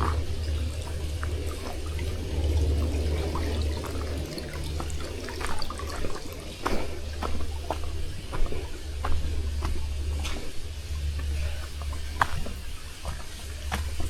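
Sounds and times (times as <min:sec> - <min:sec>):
waterfall splashing: 0:00.0 - 0:08.8
low rumble: 0:00.0 - 0:14.0.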